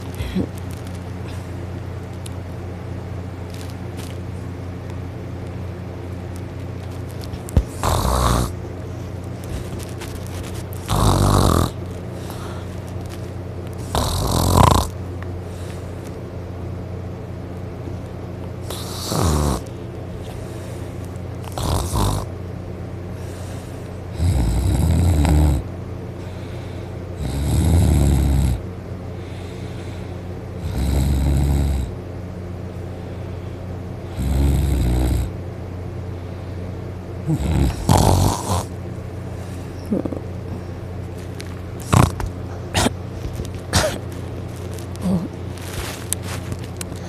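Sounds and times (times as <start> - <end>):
man snoring loudly: 7.8 - 8.6, 10.9 - 11.8, 13.8 - 15.0, 18.7 - 19.7, 21.5 - 22.3, 24.1 - 25.7, 27.2 - 28.6, 30.6 - 31.9, 34.1 - 35.4, 37.2 - 38.7, 41.8 - 42.2.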